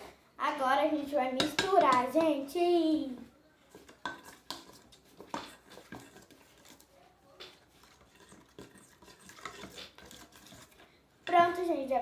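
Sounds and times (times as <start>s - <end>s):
utensil scraping container: 3.7s - 6.9s, 7.5s - 11.4s.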